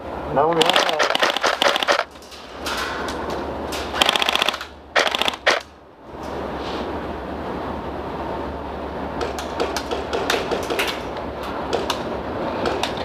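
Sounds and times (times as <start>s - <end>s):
airsoft rifle full-auto bursts: 0.6s - 2.1s, 4.0s - 5.6s.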